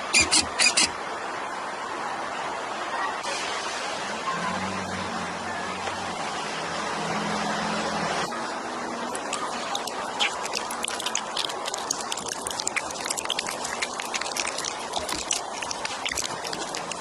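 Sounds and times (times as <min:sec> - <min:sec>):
cats crunching food: 0:09.1 - 0:17.0.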